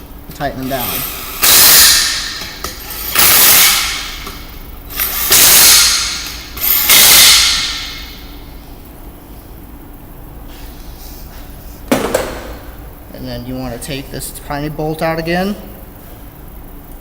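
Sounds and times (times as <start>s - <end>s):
impact wrench bursts: 0.6s - 8.4s.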